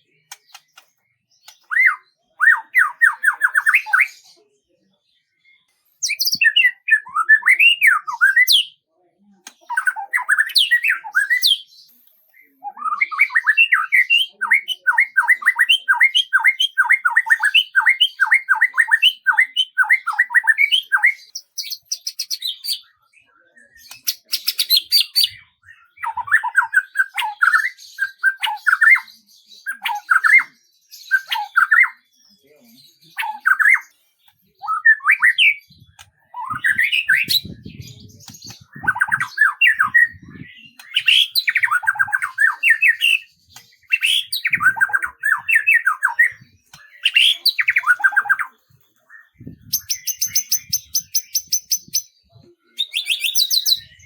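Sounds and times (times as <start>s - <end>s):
songbird singing: 0.0s - 54.0s.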